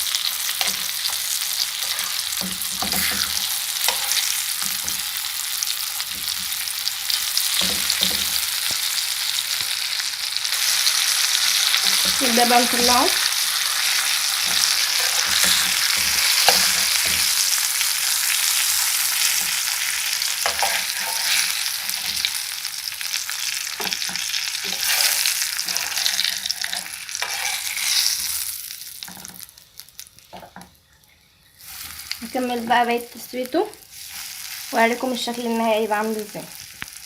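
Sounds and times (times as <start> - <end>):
chicken sizzling in hot oil: 0.0 - 37.0.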